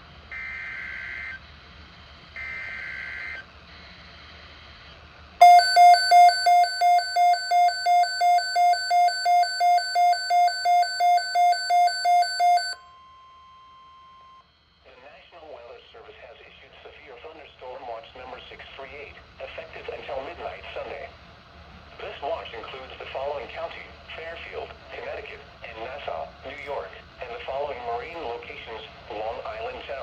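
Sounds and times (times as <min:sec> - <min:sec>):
loud pulsing alert beeps: 0:05.4 - 0:12.8
faint steady tone: 0:05.4 - 0:14.9.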